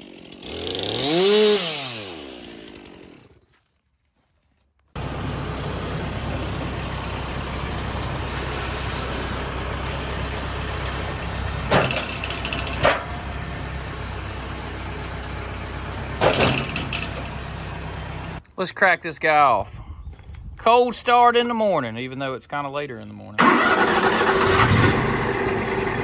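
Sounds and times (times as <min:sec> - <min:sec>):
heavy engine idling: 0:05.0 - 0:18.4, 0:23.4 - 0:26.0.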